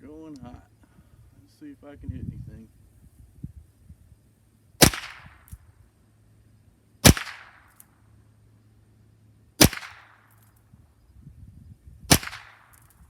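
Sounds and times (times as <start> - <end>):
rifle shots with echo: 4.8 - 5.4, 7.0 - 7.7, 9.6 - 10.3, 12.1 - 12.9.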